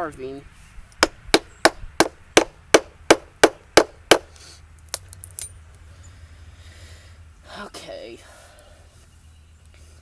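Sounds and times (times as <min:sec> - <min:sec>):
mallet striking chisel on wood: 0:01.0 - 0:04.3.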